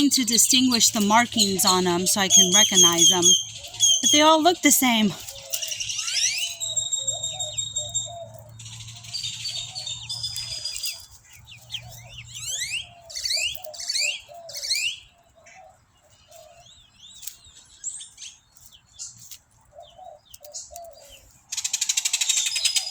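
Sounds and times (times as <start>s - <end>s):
chickens clucking: 0.0s - 14.8s
wild birds chirping and trilling: 0.0s - 22.9s.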